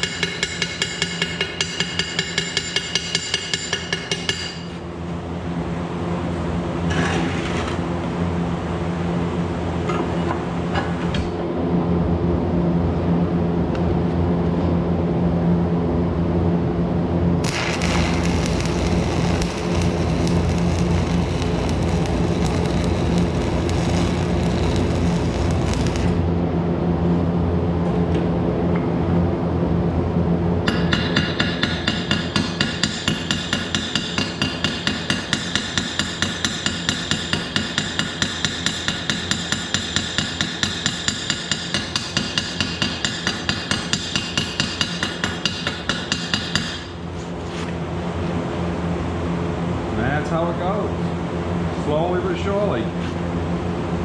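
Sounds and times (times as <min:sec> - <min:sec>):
crackling hissing welding arc: 0:17.4 - 0:26.3
welder hum: 0:17.4 - 0:26.4.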